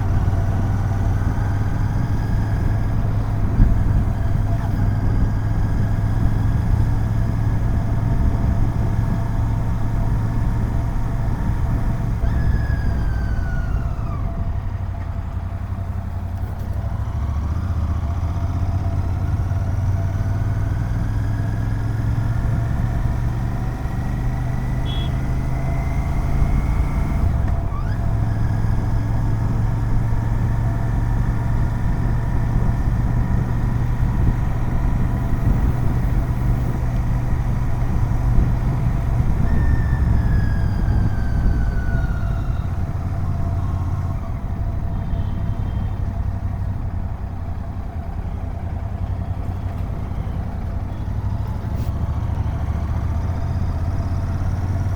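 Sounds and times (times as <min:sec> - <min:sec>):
motorcycle engine under way: 0:00.0 - 0:54.9.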